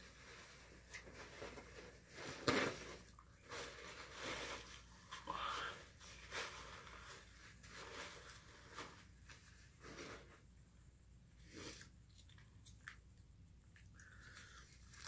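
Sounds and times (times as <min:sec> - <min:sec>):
person chewing: 0:13.7 - 0:15.0.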